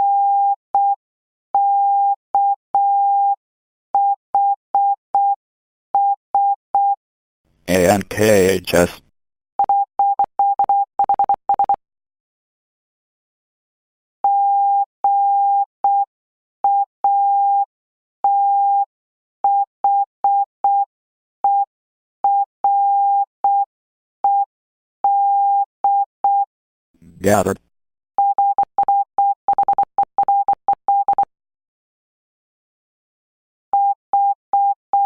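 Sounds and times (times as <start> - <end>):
morse code beeps: 9.6 - 11.8, 28.2 - 31.3.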